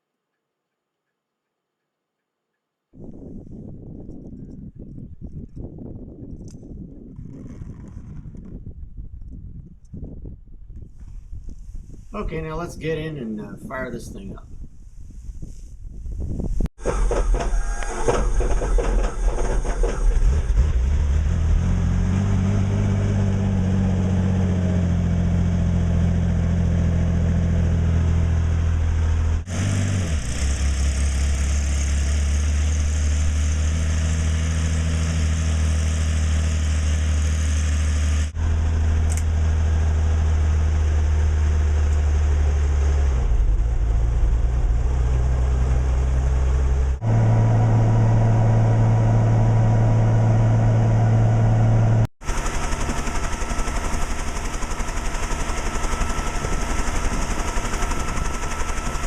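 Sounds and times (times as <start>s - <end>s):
helicopter piston engine running: 52.2s - 59.0s.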